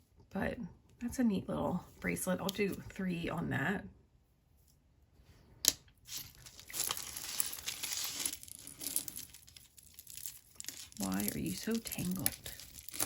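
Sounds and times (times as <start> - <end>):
plastic bag crinkling: 6.1 - 13.0.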